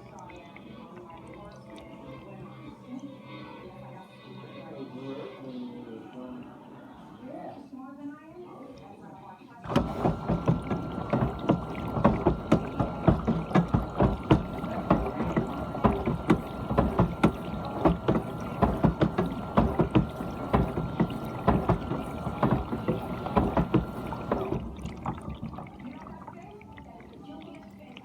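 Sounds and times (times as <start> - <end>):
water trickling: 0.0 - 7.4, 9.7 - 28.0
dishwasher water spraying: 9.6 - 28.0
dishwasher whine: 9.6 - 28.0.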